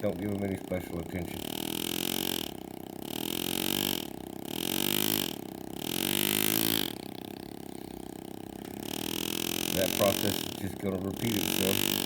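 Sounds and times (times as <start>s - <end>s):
pneumatic engraver buzzing: 1.2s - 12.0s.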